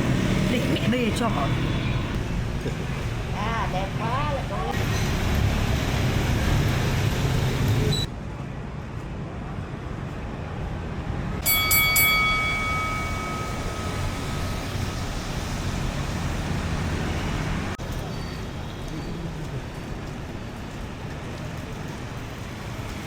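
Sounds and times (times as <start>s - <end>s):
low traffic rumble: 0.0s - 23.0s
metal struck and ringing: 11.4s - 15.4s
loud rushing noise: 13.0s - 17.8s.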